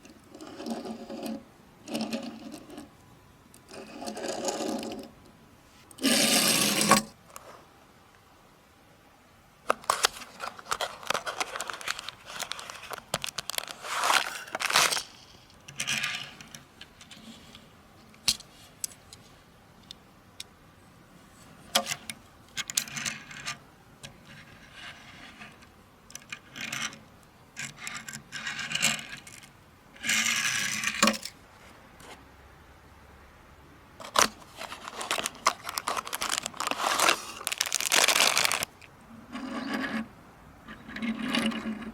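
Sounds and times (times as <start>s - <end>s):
packaging rustling and tearing: 9.7s - 15.5s, 34.0s - 38.9s.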